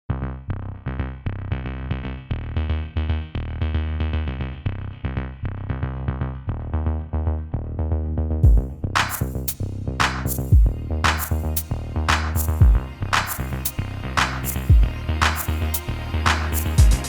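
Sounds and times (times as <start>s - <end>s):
electronic music with heavy bass: 6.4s - 17.0s
drum hit and cymbal: 16.8s - 17.0s.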